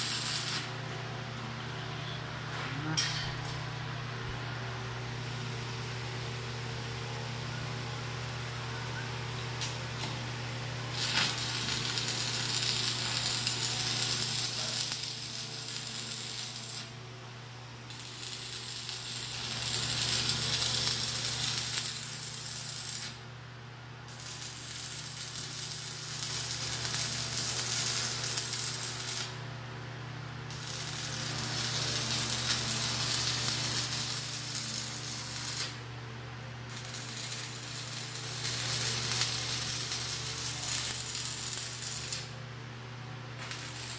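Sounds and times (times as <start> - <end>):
welding arc crackling sizzle: 0.0 - 0.9, 9.6 - 17.0, 17.8 - 23.3, 24.1 - 29.5, 30.5 - 35.9, 36.6 - 42.4, 43.4 - 43.9
steady low hum: 0.0 - 43.9.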